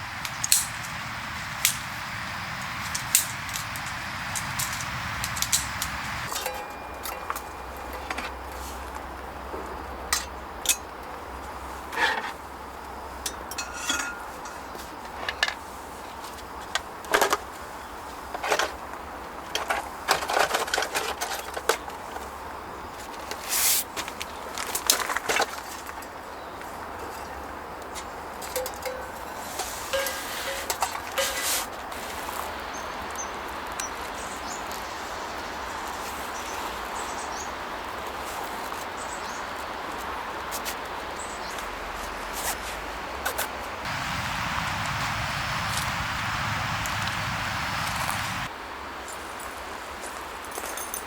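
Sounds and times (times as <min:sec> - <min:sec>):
outdoor background noise: 0:00.0 - 0:51.0
knocks and clinks of camping gear: 0:02.8 - 0:08.8, 0:09.5 - 0:11.0, 0:13.2 - 0:15.7, 0:27.9 - 0:31.8, 0:50.4 - 0:51.0.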